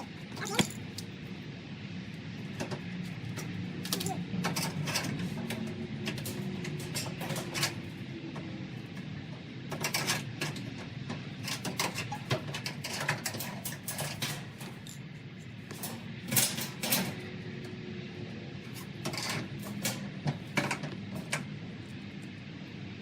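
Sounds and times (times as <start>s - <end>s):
clicks and clanks of dryer parts: 0.0s - 1.2s, 2.5s - 17.7s, 18.7s - 21.6s
steady low hum: 0.0s - 11.8s.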